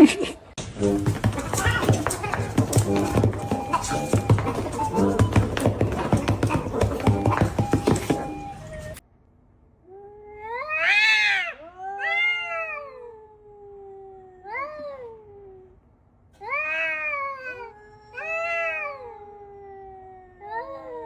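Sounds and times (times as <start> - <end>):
cat yowling: 10.2 - 15.2, 16.4 - 21.0.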